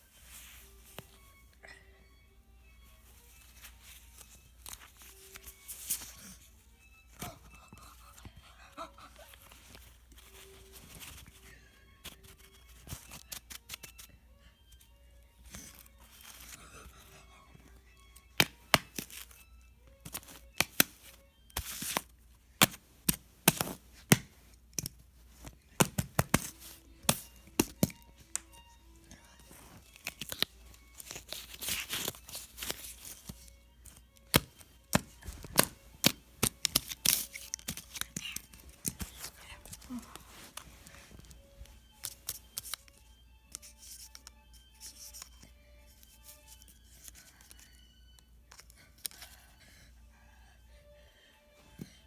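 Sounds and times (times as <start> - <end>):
faint music: 0.0 - 52.0
wrappers crinkling and tearing: 29.8 - 33.5, 34.4 - 42.8.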